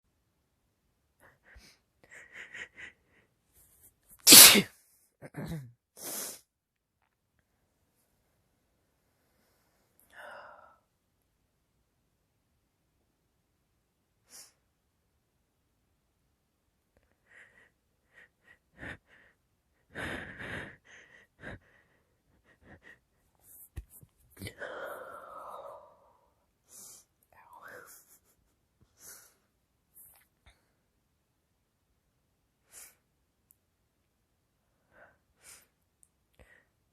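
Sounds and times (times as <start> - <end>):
wet sneeze: 4.2 - 4.7.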